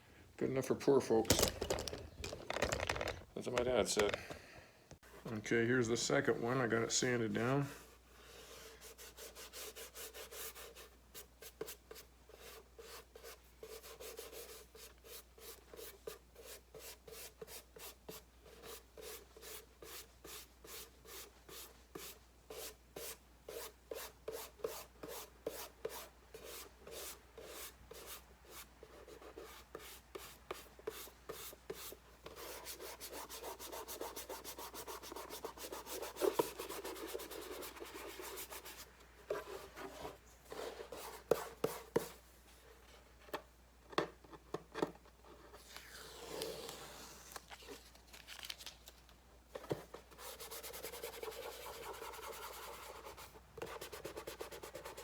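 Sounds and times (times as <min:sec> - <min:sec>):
hand rubbing painted panel: 0:11.6 - 0:42.2.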